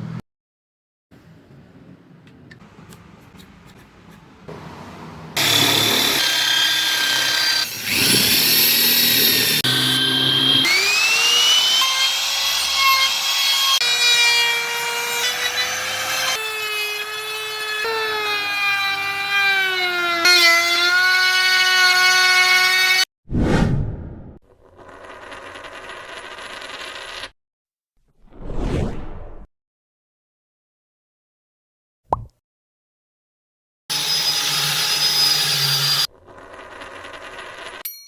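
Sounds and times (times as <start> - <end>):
power tool whine on wood: 5.4 - 16.3.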